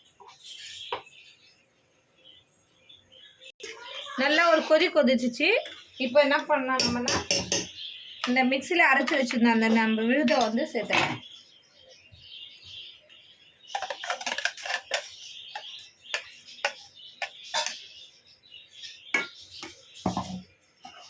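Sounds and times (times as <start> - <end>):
metal spoon clinking on steel jar: 6.8 - 7.7, 10.3 - 10.6, 13.8 - 17.8.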